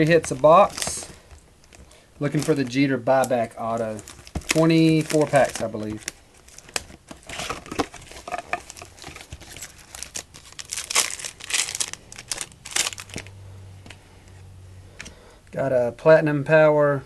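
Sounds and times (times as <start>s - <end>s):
plastic wrapper tearing and crinkling: 0.0s - 13.4s.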